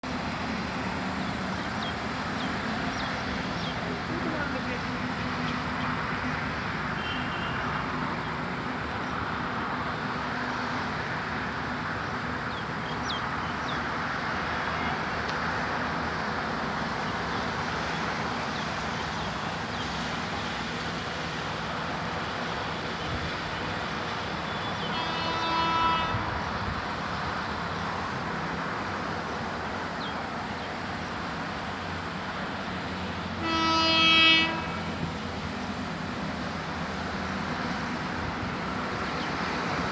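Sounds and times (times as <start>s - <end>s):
train rattling over track: 0.0s - 39.9s
train horn blasts: 6.9s - 7.9s, 24.7s - 26.9s, 33.3s - 35.3s.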